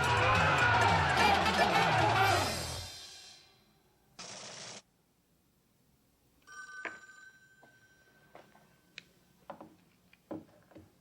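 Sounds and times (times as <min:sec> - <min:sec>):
telephone ringing: 0:06.5 - 0:08.3.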